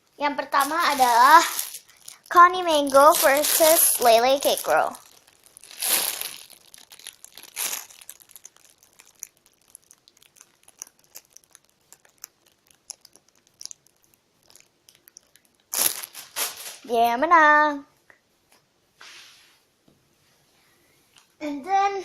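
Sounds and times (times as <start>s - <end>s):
faint crackles and ticks: 0.2s - 16.4s, 21.0s - 21.4s
crinkly rustle of foam toys: 0.4s - 17.3s.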